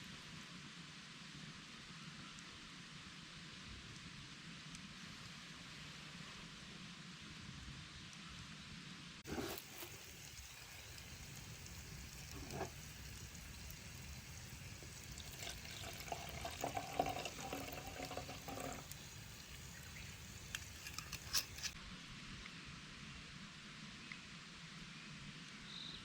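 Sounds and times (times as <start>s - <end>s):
campfire crackling: 9.2s - 21.8s
liquid pouring into a cup: 9.3s - 21.8s.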